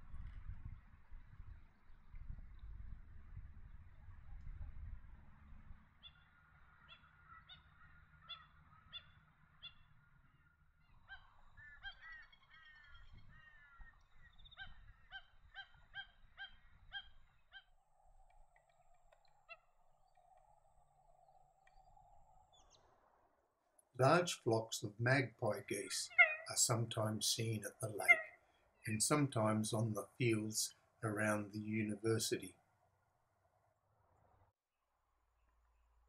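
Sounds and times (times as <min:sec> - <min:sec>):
waterbirds honking: 0:25.7 - 0:26.8, 0:27.6 - 0:28.4.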